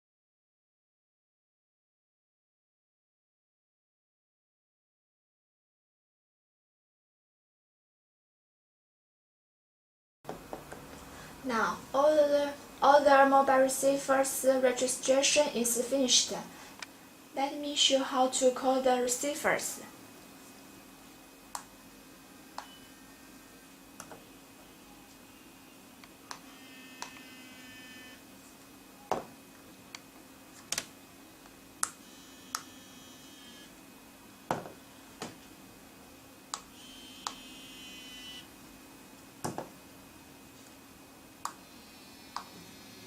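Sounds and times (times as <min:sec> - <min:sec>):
faint steady hum: 0:10.3 - 0:43.0.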